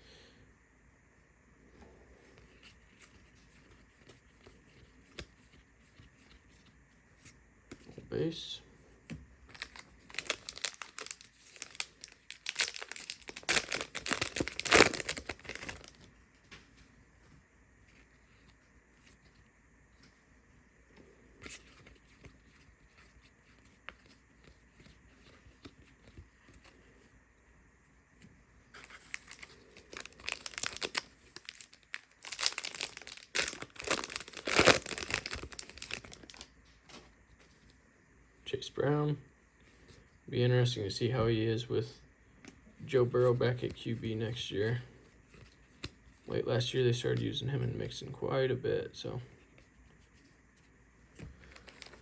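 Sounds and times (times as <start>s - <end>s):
foil wrappers tearing and crinkling: 9.5s - 16.0s, 28.8s - 36.5s, 51.4s - 52.0s.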